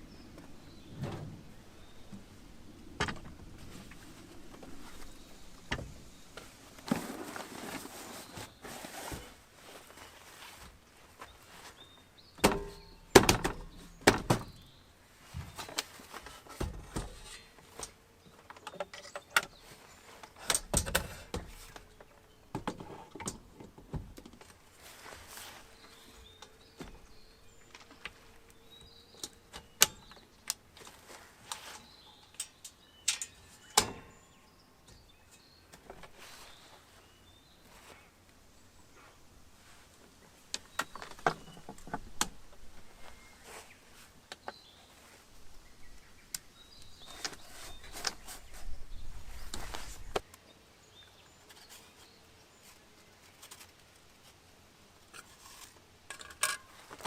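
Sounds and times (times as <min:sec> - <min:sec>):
objects knocking and clunking: 0:03.0 - 0:07.1, 0:12.4 - 0:14.6.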